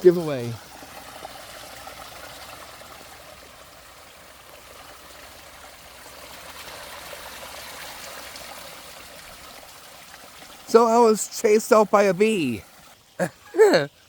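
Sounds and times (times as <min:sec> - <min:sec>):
small stream running: 0:00.0 - 0:14.0.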